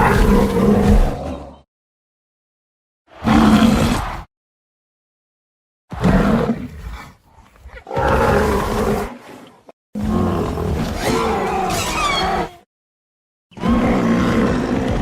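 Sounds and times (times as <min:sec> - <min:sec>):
deep animal roars: 0:00.0 - 0:01.7, 0:03.2 - 0:04.3, 0:05.9 - 0:09.4, 0:10.0 - 0:12.6, 0:13.6 - 0:15.0.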